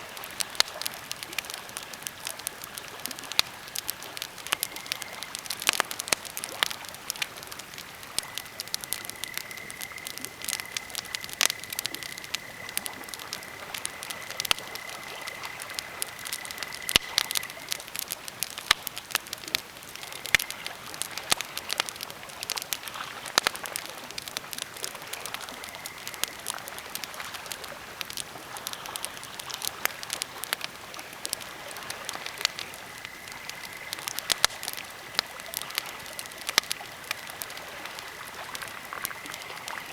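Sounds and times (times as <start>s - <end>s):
campfire crackling and popping: 0.0s - 39.9s.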